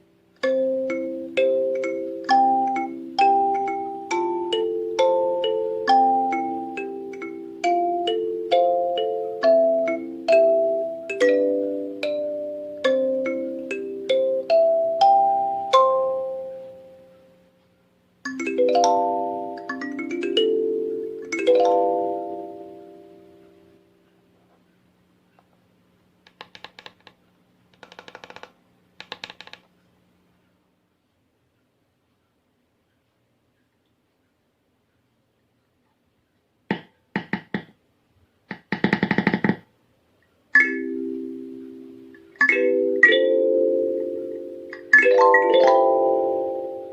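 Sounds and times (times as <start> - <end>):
kalimba notes: 0.4 - 17.4, 18.2 - 23.9, 40.6 - 46.9.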